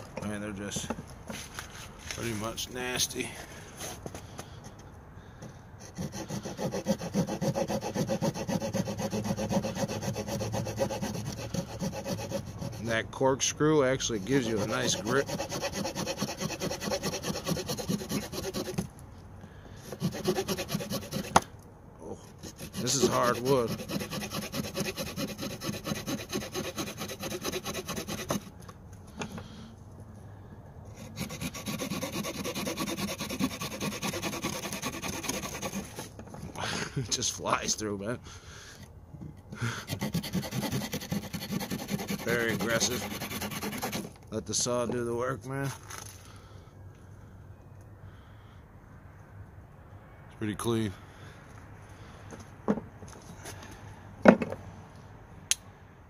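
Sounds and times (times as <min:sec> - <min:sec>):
small saw cutting wood: 0:05.4 - 0:13.0, 0:14.0 - 0:18.9, 0:19.8 - 0:21.5, 0:22.2 - 0:28.6, 0:30.9 - 0:36.2, 0:39.7 - 0:44.2.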